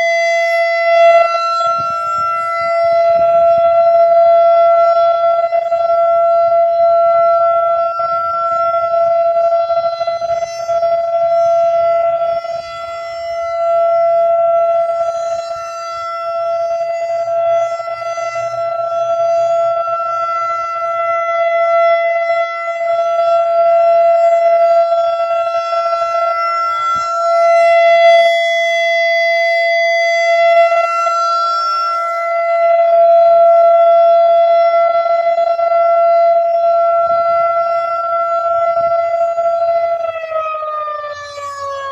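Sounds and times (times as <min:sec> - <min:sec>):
rotating warning siren steady tone: 0:00.0 - 0:41.9.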